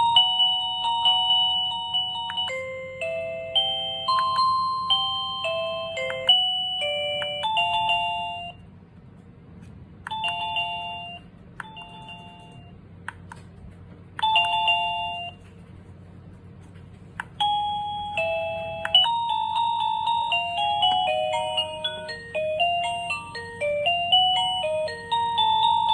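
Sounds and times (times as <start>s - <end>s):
electronic doorbell tune: 0.0s - 8.6s, 10.1s - 12.8s, 14.2s - 15.5s, 17.3s - 25.9s
two-note ding-dong chime: 0.0s - 8.6s, 17.4s - 25.9s.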